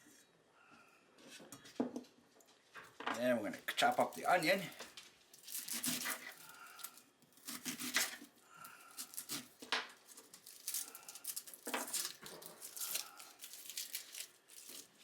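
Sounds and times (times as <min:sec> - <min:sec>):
onion skin crinkling: 0:03.7 - 0:15.0
knife cutting onion: 0:05.4 - 0:08.3, 0:08.9 - 0:09.6.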